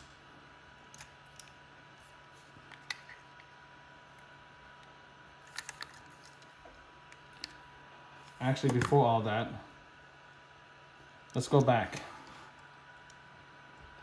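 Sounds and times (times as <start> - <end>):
faint steady hum: 0.0 - 14.0.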